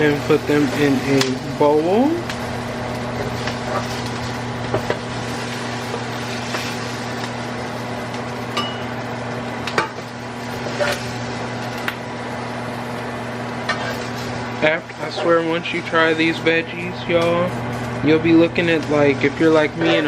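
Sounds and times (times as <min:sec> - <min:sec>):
kitchen fans humming: 0:00.0 - 0:20.0.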